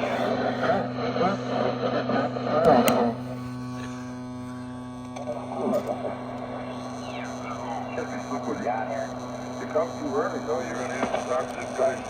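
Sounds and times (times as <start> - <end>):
radio speaker electrical hum: 0.0 - 12.0
voice from radio: 6.6 - 12.0.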